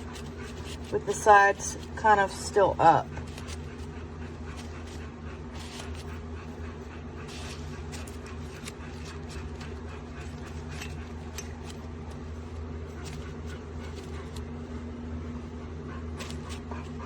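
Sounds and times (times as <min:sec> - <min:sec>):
paper coffee filter crinkling: 0:00.0 - 0:02.0, 0:03.2 - 0:06.2, 0:07.2 - 0:14.9, 0:16.2 - 0:17.0
steady low hum: 0:00.0 - 0:17.0.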